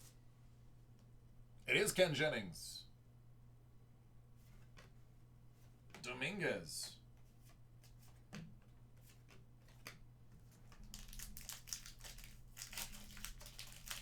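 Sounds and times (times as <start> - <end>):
plastic wrapper crinkling: 10.7 - 14.0.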